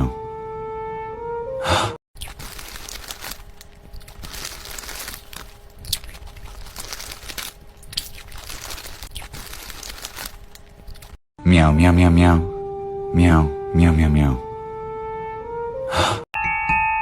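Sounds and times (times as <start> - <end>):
crunching and crackling: 2.2 - 11.2.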